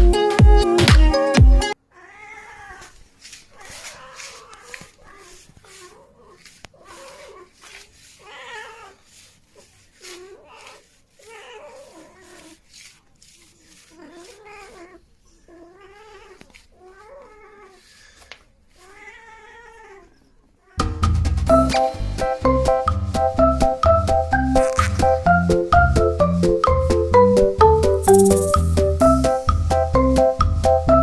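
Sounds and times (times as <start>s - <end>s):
cat meowing: 1.9s - 3.0s, 8.2s - 9.0s, 13.8s - 18.1s, 18.7s - 20.8s.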